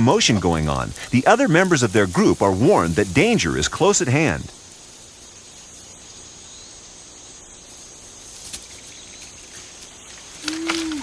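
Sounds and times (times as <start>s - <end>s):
high insect drone: 0.0s - 11.0s
chimpanzee calling: 10.4s - 11.0s.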